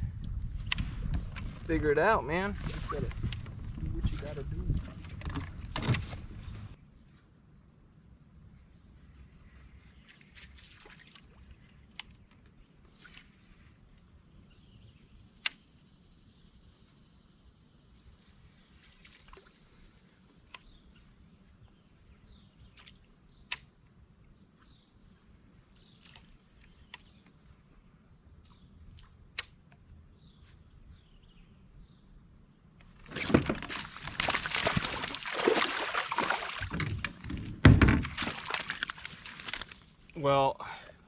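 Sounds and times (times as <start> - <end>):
fish thrashing and splashing: 33.0 - 39.9
water dripping and trickling: 33.5 - 40.3.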